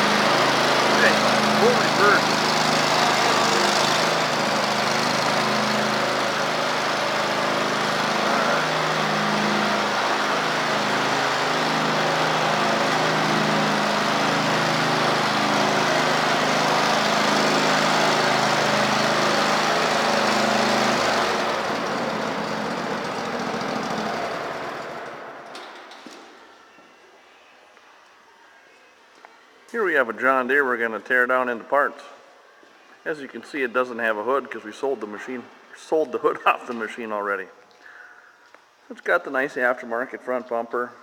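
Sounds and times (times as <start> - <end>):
riding mower engine running: 0.0 - 26.0.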